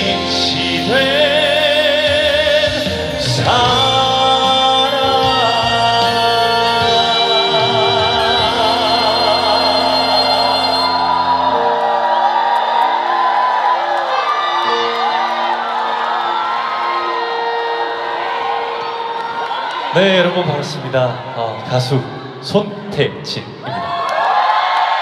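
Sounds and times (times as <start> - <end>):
person singing with vibrato: 0.0 - 11.9
band playing: 0.0 - 21.3.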